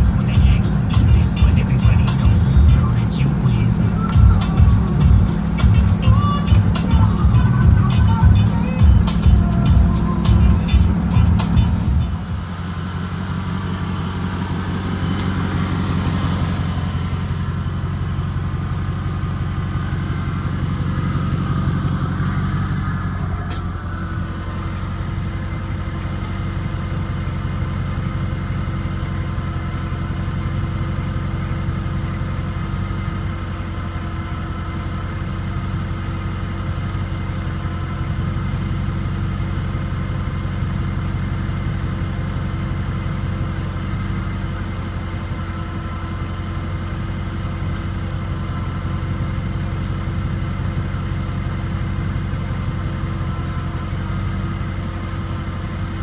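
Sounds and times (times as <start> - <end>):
truck engine idling: 0.0 - 56.0.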